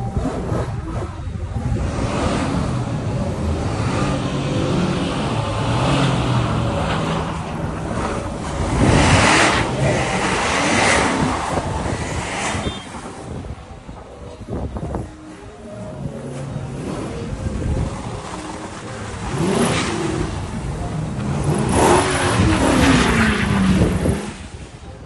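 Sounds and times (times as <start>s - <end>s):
road and wind rushing: 0.0s - 25.0s.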